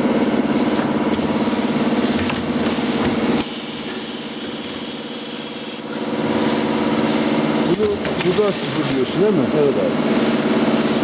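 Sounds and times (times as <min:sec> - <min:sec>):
packaging machine hum: 0:00.0 - 0:11.0
machine clicks: 0:07.6 - 0:09.1.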